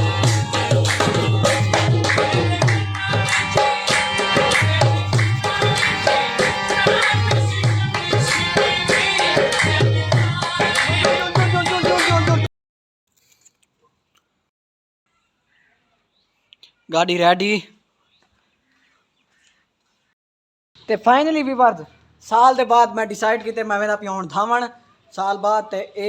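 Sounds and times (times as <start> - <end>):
song with tabla and drum beat: 0.0 - 12.5.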